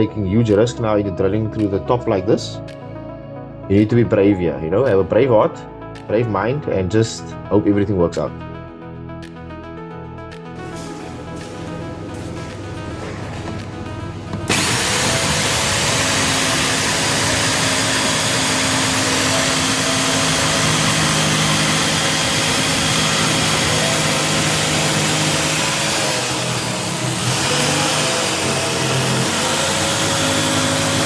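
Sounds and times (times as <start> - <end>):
power drill hole saw cutting: 14.5 - 31.0.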